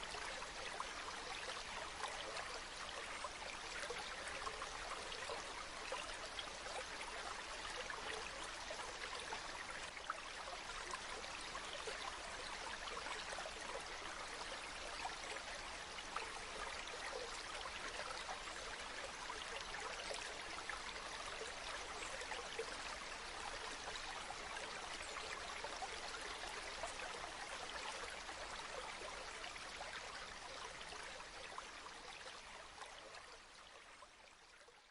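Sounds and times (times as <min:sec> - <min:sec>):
stream running and trickling: 0:00.0 - 0:34.9.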